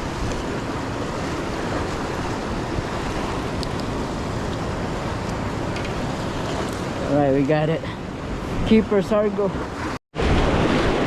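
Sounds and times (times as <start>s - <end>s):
ocean surf breaking on rocks: 0.0s - 11.0s
wind noise on microphone: 8.1s - 11.0s.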